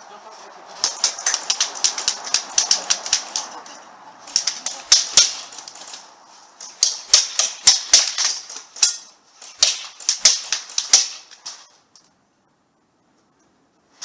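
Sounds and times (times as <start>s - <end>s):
airsoft guns firing: 0.8s - 3.5s, 4.2s - 6.0s, 6.7s - 11.4s.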